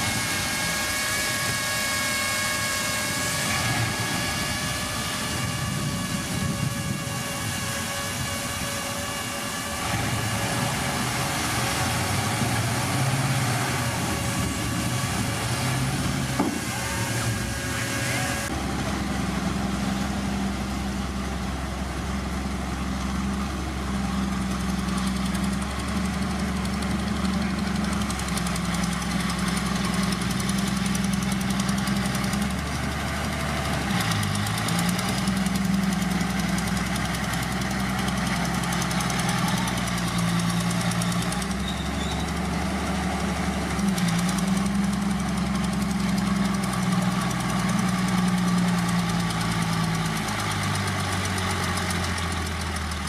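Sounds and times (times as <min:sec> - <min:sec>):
high whine: 0:00.0 - 0:22.3
diesel machinery engine: 0:00.0 - 0:53.0.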